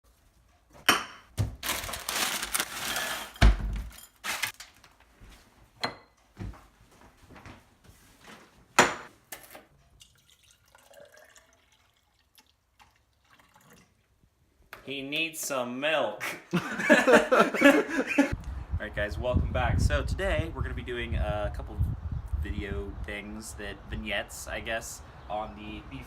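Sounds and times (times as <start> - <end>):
pouring into a bowl: 10.0 - 14.1.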